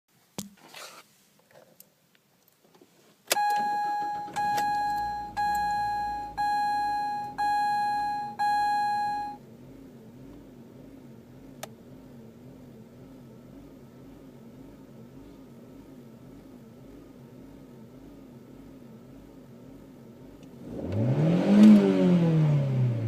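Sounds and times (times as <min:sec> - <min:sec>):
dashboard warning chime: 0:03.4 - 0:09.4.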